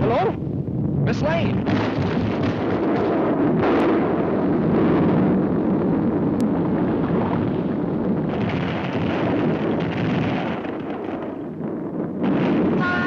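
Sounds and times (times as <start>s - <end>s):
cartoon volcano eruption rumble: 0.0s - 13.0s.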